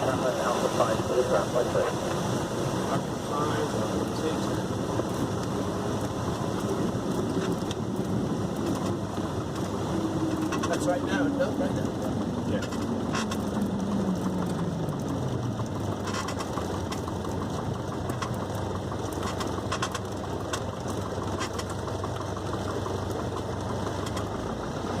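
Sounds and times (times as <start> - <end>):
propeller plane engine idling: 0.0 - 25.0.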